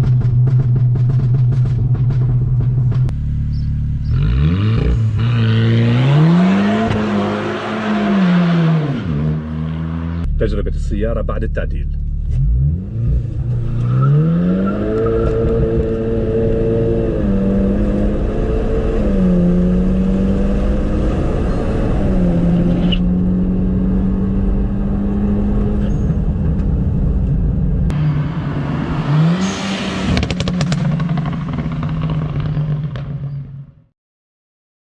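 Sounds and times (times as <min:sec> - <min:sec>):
exhaust crackles and pops: 0:00.0 - 0:04.0
car engine revving: 0:00.0 - 0:33.6.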